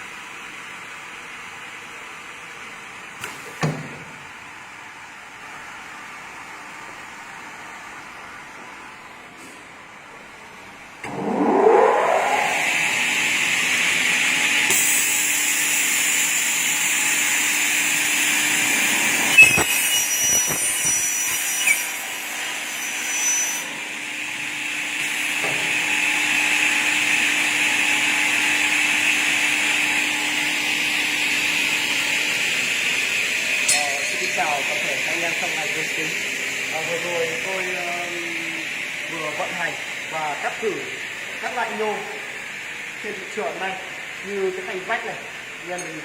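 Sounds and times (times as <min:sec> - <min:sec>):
cutting saw whining: 0:11.0 - 0:23.6, 0:25.1 - 0:36.0.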